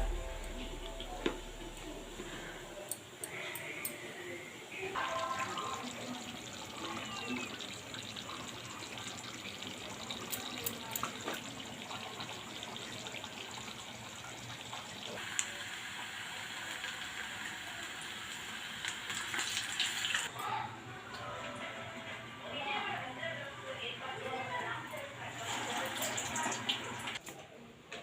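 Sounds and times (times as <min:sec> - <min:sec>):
tap water running into sink: 0:05.0 - 0:15.6.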